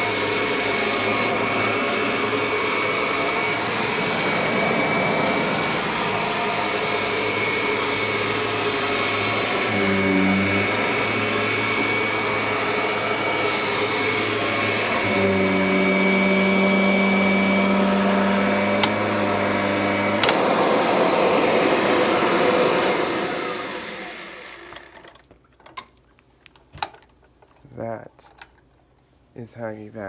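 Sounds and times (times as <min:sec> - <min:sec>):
vacuum cleaner running: 0:00.0 - 0:25.2
switch click: 0:20.2 - 0:20.4.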